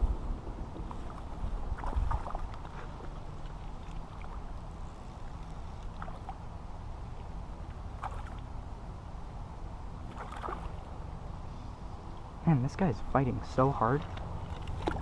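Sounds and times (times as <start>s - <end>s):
wind rumble on microphone: 0.0s - 8.9s.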